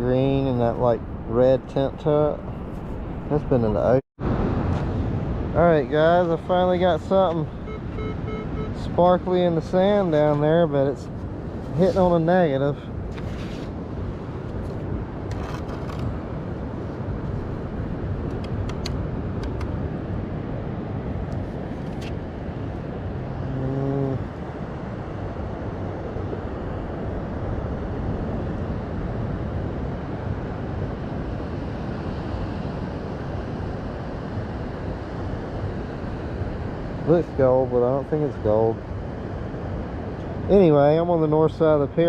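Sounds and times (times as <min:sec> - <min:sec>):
surf rumble: 0:00.0 - 0:42.0
wind on microphone: 0:00.0 - 0:42.0
sharp clicks: 0:18.2 - 0:19.8.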